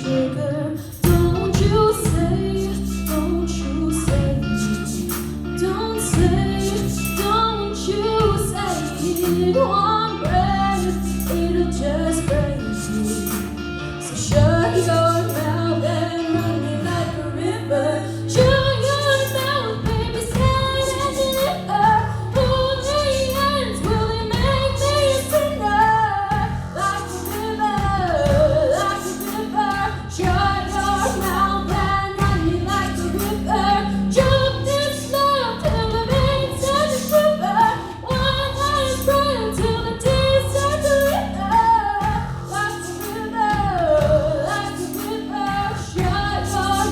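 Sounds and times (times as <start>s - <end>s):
low bass notes: 0.0s - 46.9s
woman singing: 0.0s - 46.9s
steady rhythm: 18.2s - 46.9s.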